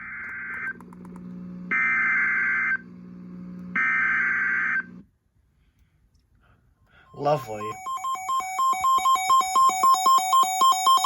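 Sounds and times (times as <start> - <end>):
digital data tone bursts: 7.1 - 11.0.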